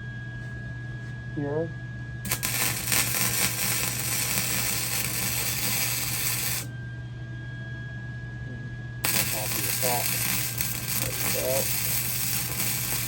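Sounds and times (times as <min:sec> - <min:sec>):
arc welding crackling: 0:02.3 - 0:06.7, 0:09.0 - 0:13.0.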